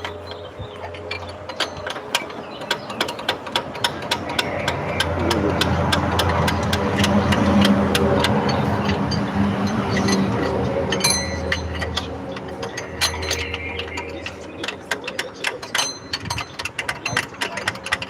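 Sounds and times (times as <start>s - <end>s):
sharp metallic clicks: 0.0s - 18.0s.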